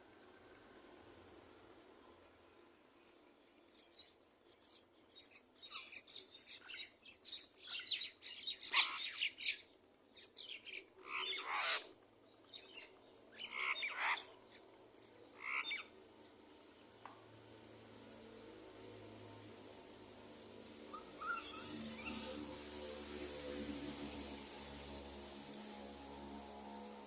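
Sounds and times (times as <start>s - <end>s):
bird giving harsh scratchy calls: 5.6s - 9.6s, 11.0s - 11.9s, 20.9s - 22.9s.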